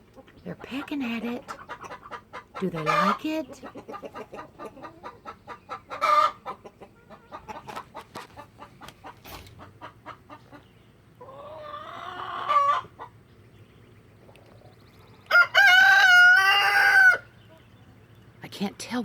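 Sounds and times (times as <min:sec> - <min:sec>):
chickens clucking: 0:00.0 - 0:18.4
chicken squawk: 0:01.5 - 0:10.6, 0:11.2 - 0:13.1, 0:15.3 - 0:17.6.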